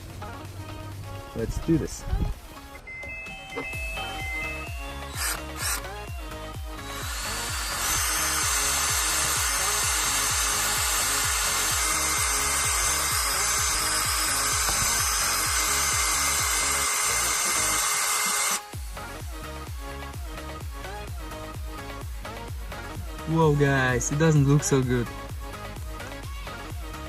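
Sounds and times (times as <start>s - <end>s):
background music with steady beat: 0.0s - 27.0s
cordless drill grinding whine: 3.7s - 18.7s.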